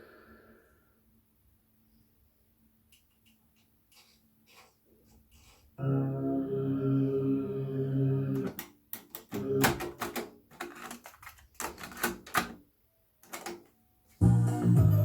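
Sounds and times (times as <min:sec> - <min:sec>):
keyboard chord: 0:14.2 - 0:15.0.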